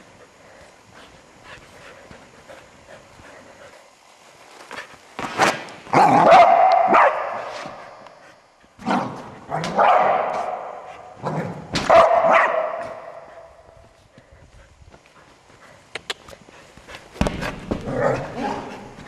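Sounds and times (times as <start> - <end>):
dog barking loudly: 6.0 - 7.5, 9.6 - 10.9, 11.8 - 13.2.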